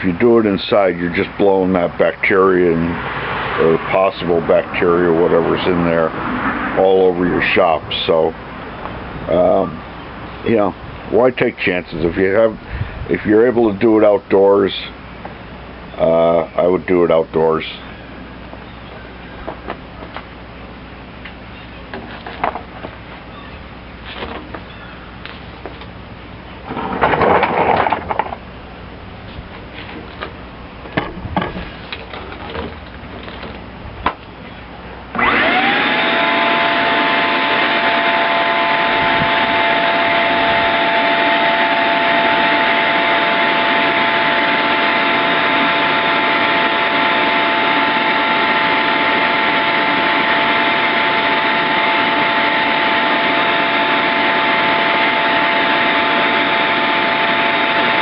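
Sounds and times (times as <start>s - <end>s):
shop vacuum running: 0.0s - 8.4s, 35.1s - 58.0s
handling clatter and knocks: 26.7s - 28.4s, 29.6s - 34.2s.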